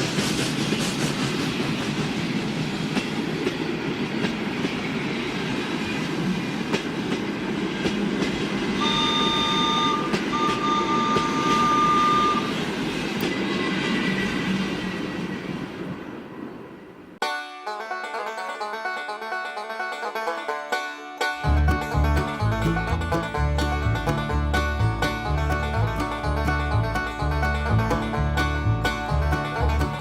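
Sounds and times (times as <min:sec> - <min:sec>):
train rumbling on rails: 0:00.0 - 0:17.2, 0:21.4 - 0:30.0
wooden train whistle chord: 0:08.8 - 0:12.6
clicks from the track: 0:09.9 - 0:11.8.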